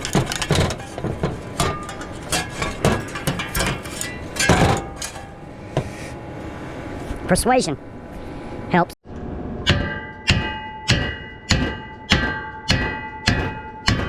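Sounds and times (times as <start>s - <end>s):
hammer striking metal: 0.0s - 6.0s, 9.6s - 14.0s.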